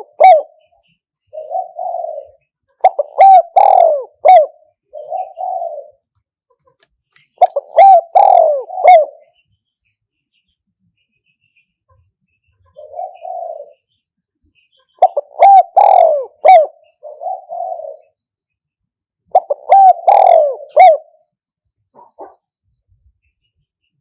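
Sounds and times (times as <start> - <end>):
dove cooing: 0.0 - 0.7, 1.3 - 6.1, 7.4 - 9.3, 12.7 - 13.8, 15.0 - 18.2, 19.3 - 21.2.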